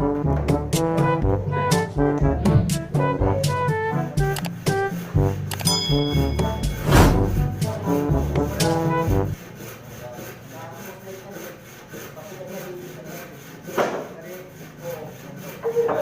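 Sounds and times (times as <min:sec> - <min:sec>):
music: 0:00.0 - 0:09.4
saw cutting through wood: 0:08.8 - 0:16.0.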